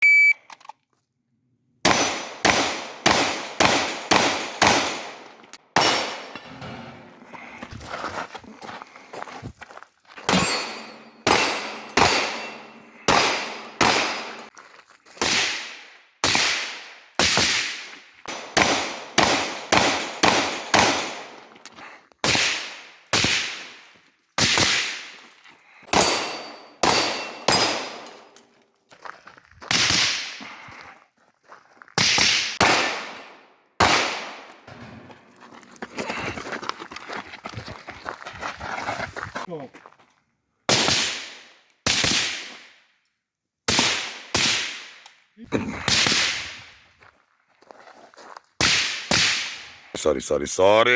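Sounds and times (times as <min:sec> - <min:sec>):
gunshots echoing: 0:01.8 - 0:07.2, 0:10.3 - 0:14.5, 0:15.2 - 0:21.6, 0:22.2 - 0:23.8, 0:24.4 - 0:25.2, 0:25.8 - 0:28.4, 0:29.7 - 0:30.4, 0:32.0 - 0:34.7, 0:40.7 - 0:42.7, 0:43.7 - 0:45.0, 0:45.8 - 0:46.7, 0:48.6 - 0:49.8.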